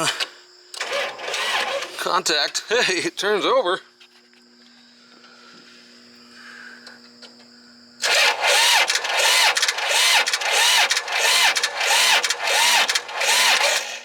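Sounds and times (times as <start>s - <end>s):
starter motor cranking engine: 0.1s - 2.7s, 8.0s - 14.0s.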